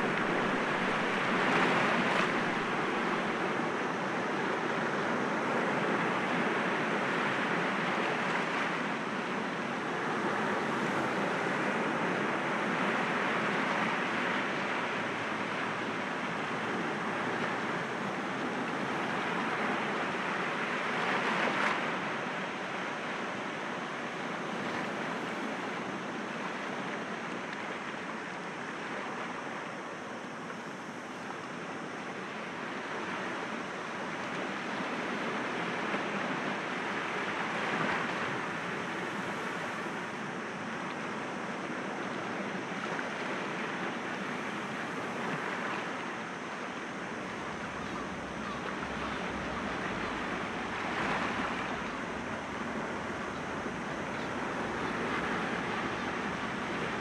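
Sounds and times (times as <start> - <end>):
sea waves breaking against rocks: 0.0 - 3.7, 42.9 - 57.0.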